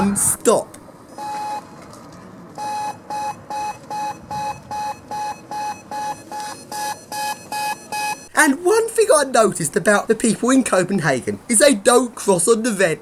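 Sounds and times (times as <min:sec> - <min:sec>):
crossing signal beeping: 0:01.2 - 0:01.7, 0:02.6 - 0:08.3.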